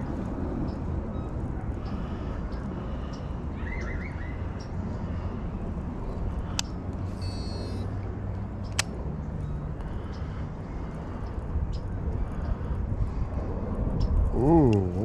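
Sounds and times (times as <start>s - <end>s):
sharp clicks: 6.5s - 7.8s, 8.6s - 9.0s.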